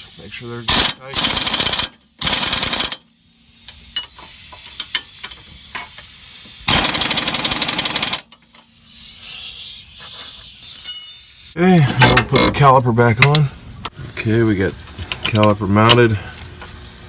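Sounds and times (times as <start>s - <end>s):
impact wrench hammering: 0.7s - 3.0s, 6.7s - 8.4s.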